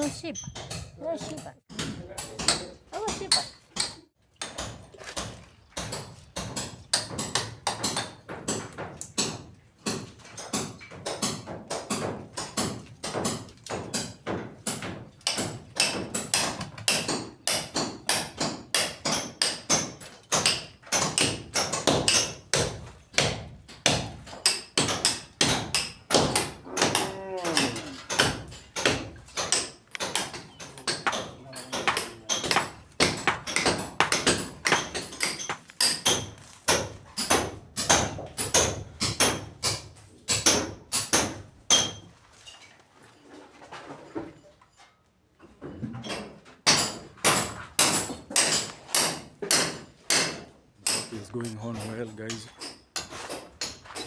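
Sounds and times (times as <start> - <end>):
hand tools knocking: 23.9 - 42.0, 46.7 - 53.9.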